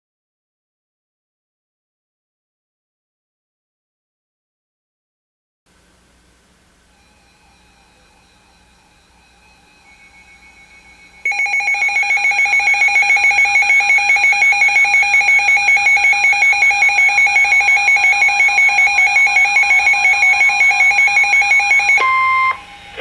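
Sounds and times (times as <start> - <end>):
rapidly pulsing electronic alarm tone: 6.9 - 23.0.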